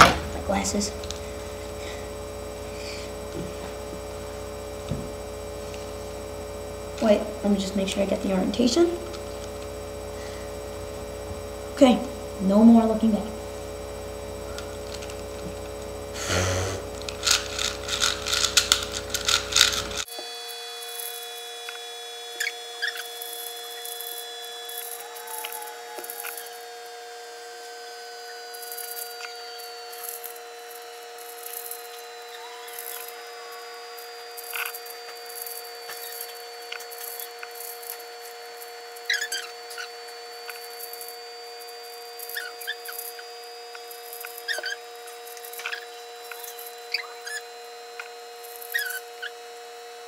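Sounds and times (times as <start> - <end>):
two-tone electrical hum: 0.0 - 50.0
puzzle cube clicking and rattling: 17.0 - 20.1
short squeaky chirps: 42.2 - 44.9.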